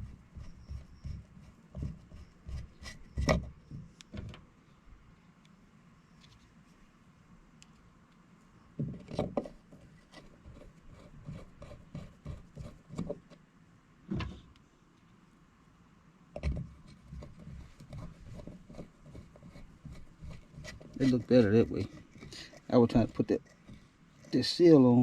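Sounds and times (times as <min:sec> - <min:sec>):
parts knocking and clunking: 0:03.2 - 0:04.5, 0:14.1 - 0:14.5, 0:16.4 - 0:18.7.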